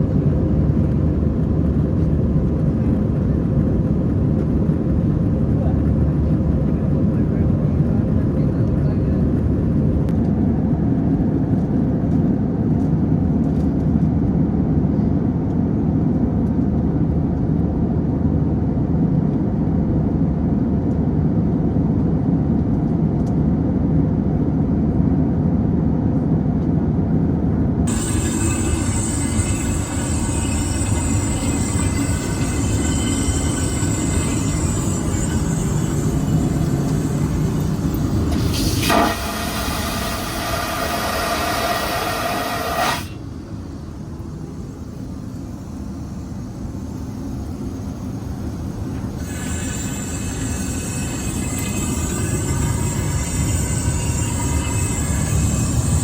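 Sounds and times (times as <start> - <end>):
airplane cabin engine rumble: 0.0 - 49.4
bright hiss: 27.9 - 56.0.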